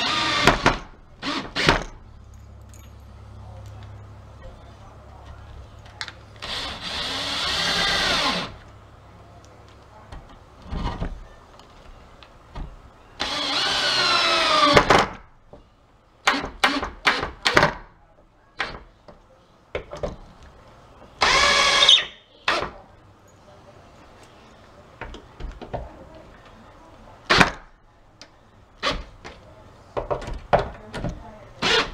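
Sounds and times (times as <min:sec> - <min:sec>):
cordless drill driving screws: 0:00.0 - 0:01.9, 0:06.4 - 0:08.6, 0:13.2 - 0:14.9, 0:21.2 - 0:22.6, 0:31.6 - 0:31.9.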